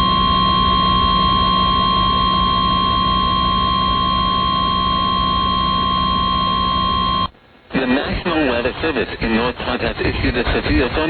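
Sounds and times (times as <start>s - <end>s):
steady high alarm tone: 0.0s - 7.3s
low hum: 0.0s - 7.5s
radio hiss: 6.7s - 11.0s.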